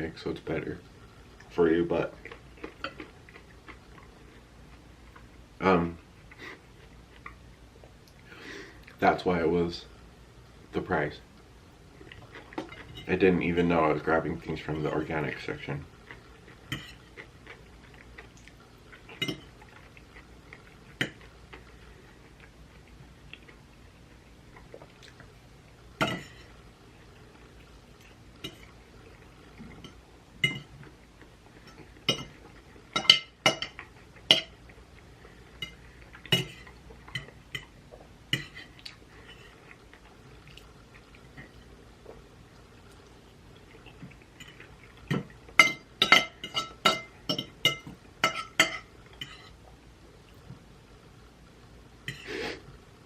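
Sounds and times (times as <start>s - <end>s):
cutlery clinking against a dish: 16.7s - 17.1s, 26.0s - 26.5s, 29.8s - 30.7s, 32.1s - 32.4s, 33.0s - 34.6s, 35.6s - 37.7s, 44.4s - 49.5s.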